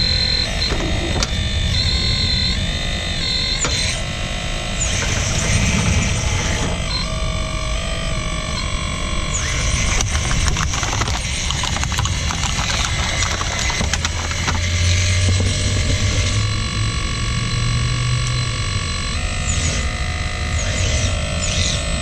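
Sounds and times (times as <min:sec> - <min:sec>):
low hum: 0:00.0 - 0:22.0
toy excavator motors whining: 0:00.0 - 0:22.0
clicks and crackles: 0:09.4 - 0:16.2.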